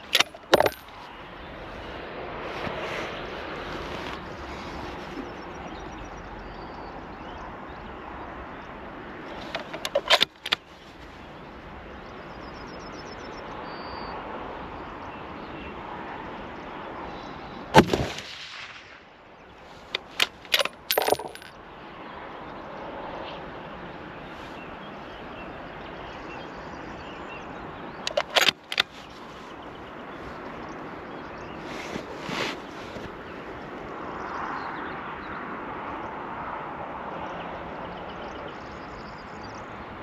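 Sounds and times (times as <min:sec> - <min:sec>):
rifle bolt clicking: 0:09.5 - 0:10.6, 0:19.9 - 0:21.5, 0:28.1 - 0:28.9
rifle shot: 0:17.8 - 0:19.0.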